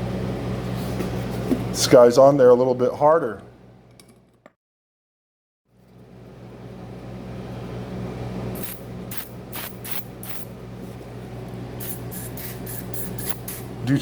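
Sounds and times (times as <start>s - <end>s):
steady low hum: 5.8s - 14.0s.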